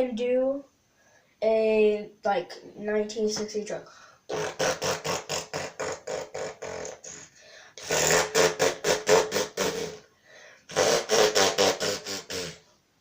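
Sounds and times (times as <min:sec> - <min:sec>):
boy imitating truck engine: 0:04.3 - 0:10.0, 0:10.7 - 0:12.6.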